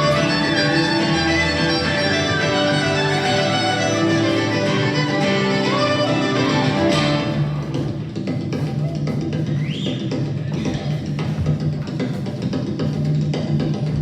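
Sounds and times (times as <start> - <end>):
drum and percussion hits: 7.0 - 14.0.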